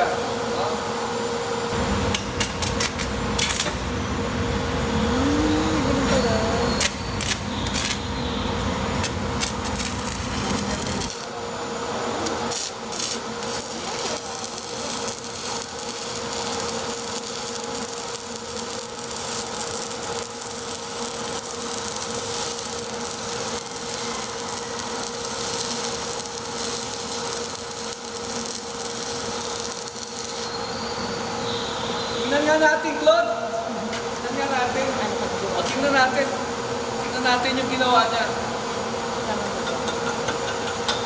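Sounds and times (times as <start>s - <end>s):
steady welder hum: 0.0s - 41.0s
welding arc crackling and sizzling: 1.7s - 33.1s.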